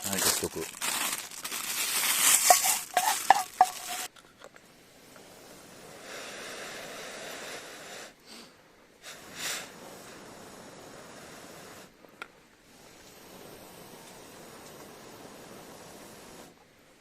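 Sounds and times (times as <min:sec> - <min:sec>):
soft steady hiss: 0:00.0 - 0:17.0
metal utensil scraping a pan: 0:02.2 - 0:04.1.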